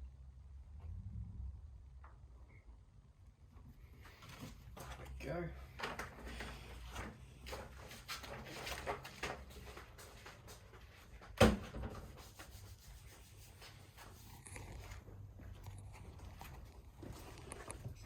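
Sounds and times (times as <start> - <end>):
rubbing and handling noises: 3.8 - 18.0.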